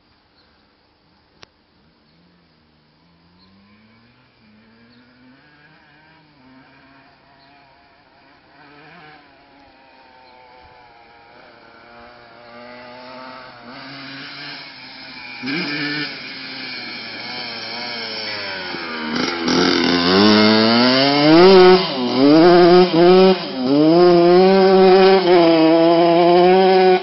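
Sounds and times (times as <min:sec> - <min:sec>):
dirt bike engine revving: 0:03.0 - 0:27.0.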